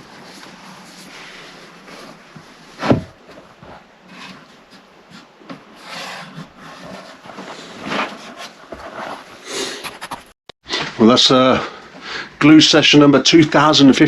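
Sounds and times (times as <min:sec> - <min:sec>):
wood rubbing and scraping: 0:00.0 - 0:11.1.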